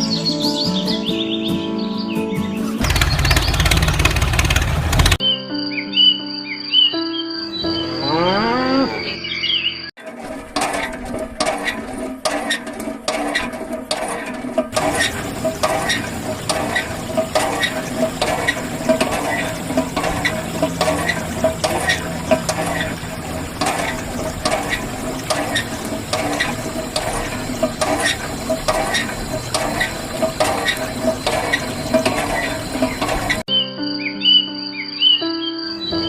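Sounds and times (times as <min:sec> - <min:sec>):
geared mechanism clicking: 0:10.0 - 0:33.4.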